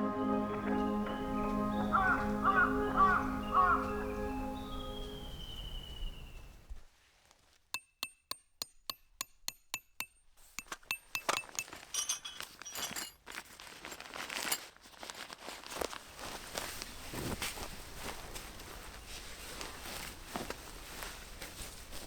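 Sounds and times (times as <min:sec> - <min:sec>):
light metallic clinks: 0:09.3 - 0:13.2
clatter of gear being handled: 0:10.6 - 0:16.8.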